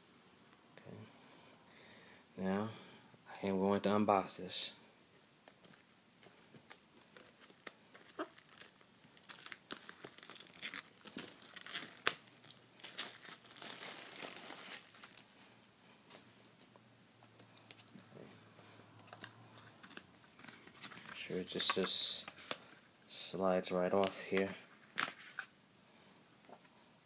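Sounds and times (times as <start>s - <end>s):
plastic wrapping being torn: 5.5s - 15.3s.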